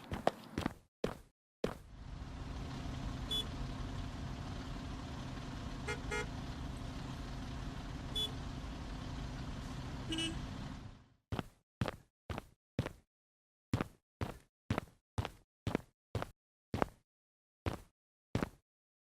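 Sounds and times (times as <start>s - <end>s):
low engine-like rumble: 1.8s - 11.1s.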